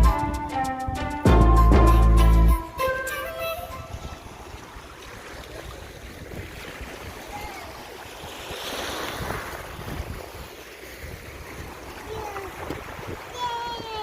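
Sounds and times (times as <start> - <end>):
sea waves washing ashore: 2.6 - 14.0
wind rumbling on microphone: 3.8 - 14.0.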